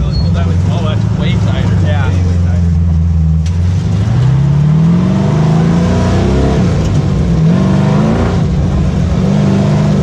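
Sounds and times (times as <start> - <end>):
engine revving hard: 3.7 - 10.0.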